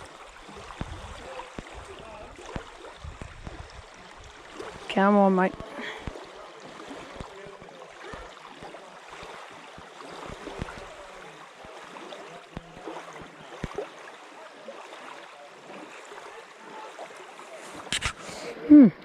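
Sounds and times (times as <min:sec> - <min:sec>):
small waves lapping: 0:00.0 - 0:19.0.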